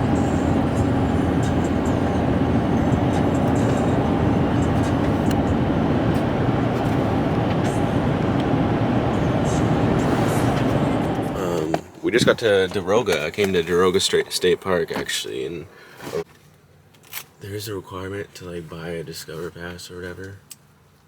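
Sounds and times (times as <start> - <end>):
car road and engine noise: 0.0 - 13.5.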